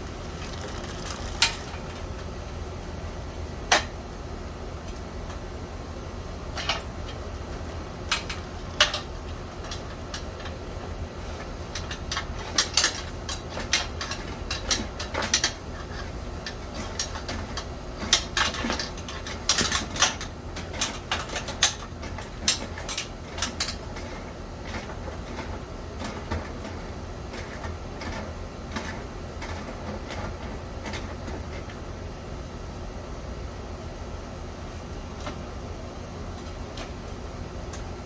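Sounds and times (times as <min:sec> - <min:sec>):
cleaning rods clicking and scraping in duct: 0:00.0 - 0:02.4, 0:06.4 - 0:31.9, 0:36.3 - 0:38.0.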